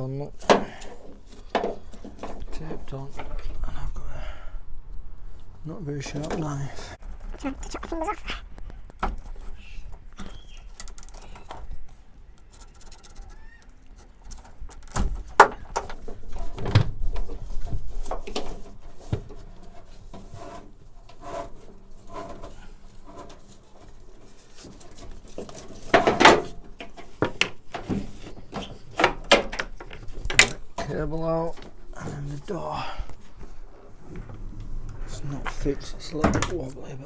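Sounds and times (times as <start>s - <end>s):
knife scraping cable: 9.1s - 16.5s, 17.6s - 29.1s.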